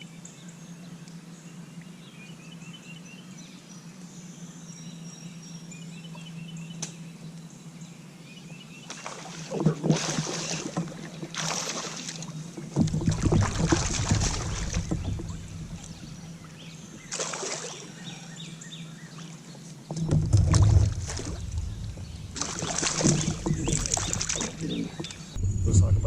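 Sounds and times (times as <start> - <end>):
water splashing against kayak: 8.9 - 18.1, 19.3 - 25.4
low bumps on microphone: 12.6 - 16.3, 19.9 - 26.0.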